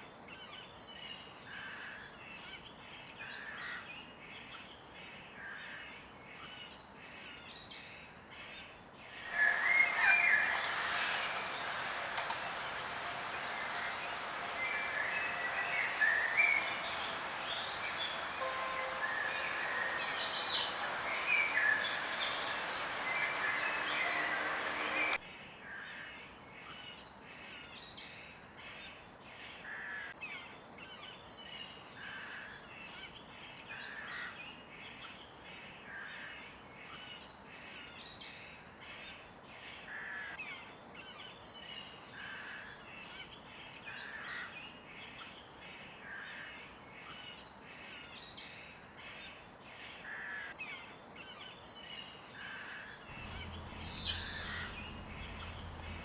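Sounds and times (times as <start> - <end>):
loud full sound: 9.2 - 25.2
birds chirping: 9.3 - 25.2, 53.1 - 56.0
lower bird call: 53.1 - 56.0.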